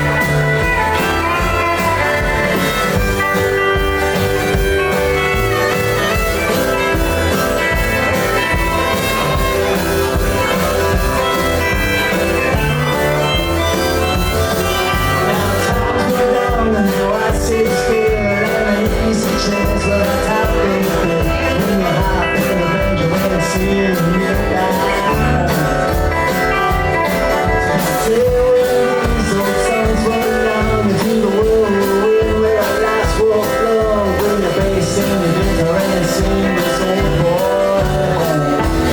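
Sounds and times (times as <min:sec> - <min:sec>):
band playing blues-rock song: 0:00.0 - 0:38.9
guitar: 0:00.0 - 0:38.9.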